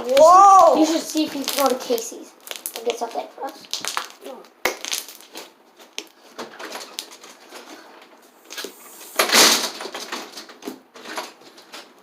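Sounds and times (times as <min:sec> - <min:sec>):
air bubble bursting in slime: 0:00.0 - 0:03.0, 0:03.6 - 0:05.4
slime squeezed and stretched: 0:00.0 - 0:06.2
sticky clicks and crackles: 0:00.0 - 0:07.8.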